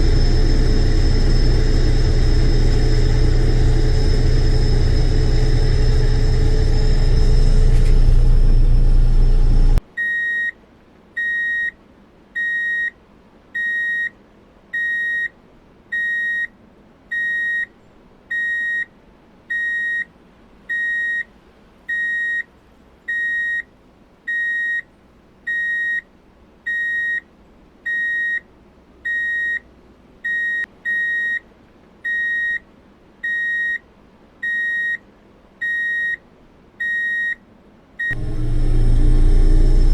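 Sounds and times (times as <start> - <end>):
heavy vehicle engine running: 0.0 - 9.8, 38.1 - 39.9
vehicle warning beeper: 0.0 - 10.6, 12.4 - 13.0, 17.1 - 17.7, 29.1 - 29.6, 30.3 - 31.5, 32.1 - 32.6, 33.2 - 33.8, 34.4 - 35.0, 35.6 - 36.2, 36.8 - 37.4, 38.0 - 39.9.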